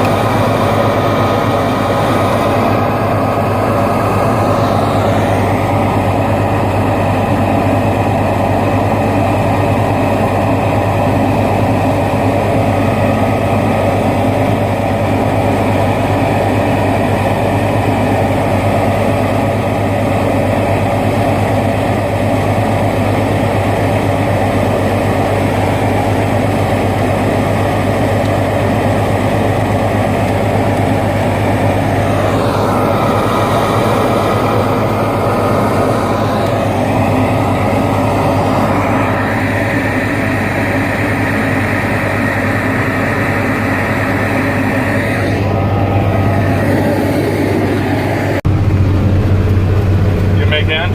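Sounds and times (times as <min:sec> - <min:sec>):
rising whine: 0:00.0 - 0:50.9
truck diesel engine running: 0:00.0 - 0:50.9.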